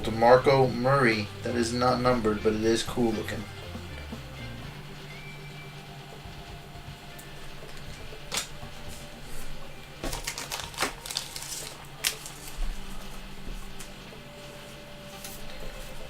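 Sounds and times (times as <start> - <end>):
trading cards flipping: 7.2 - 9.4, 10.0 - 14.0.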